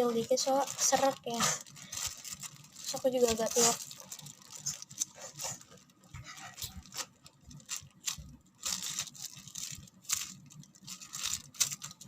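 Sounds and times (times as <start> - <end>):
squishy toys clicking and rustling: 0.0 - 12.0.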